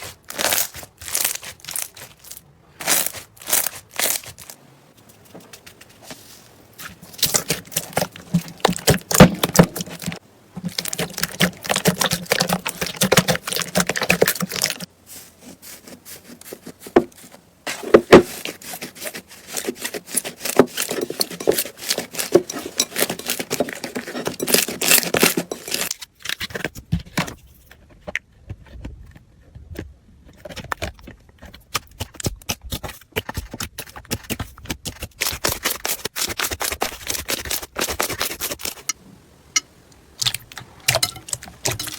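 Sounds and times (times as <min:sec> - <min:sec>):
slime clicking and crackling: 0:00.0 - 0:04.6.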